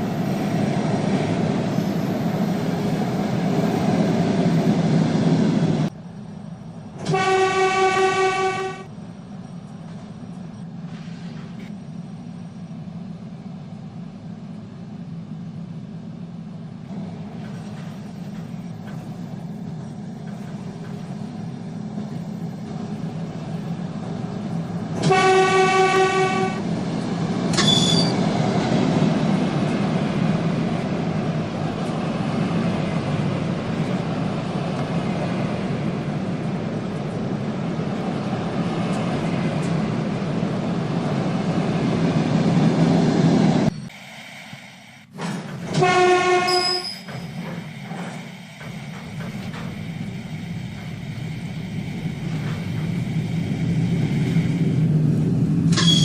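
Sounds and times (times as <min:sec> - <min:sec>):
train rumble: 0:00.0 - 0:56.0
higher horn toot: 0:07.1 - 0:08.9, 0:25.0 - 0:26.6, 0:45.8 - 0:46.9
train horn blast: 0:07.1 - 0:08.9, 0:25.0 - 0:26.6, 0:45.7 - 0:46.9.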